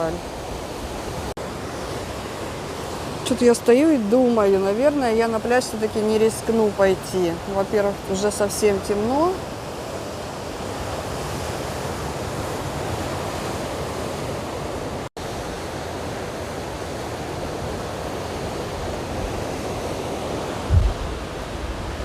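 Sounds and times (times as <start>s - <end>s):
sea surf breaking: 7.4s - 22.0s
wind on microphone: 17.0s - 22.0s.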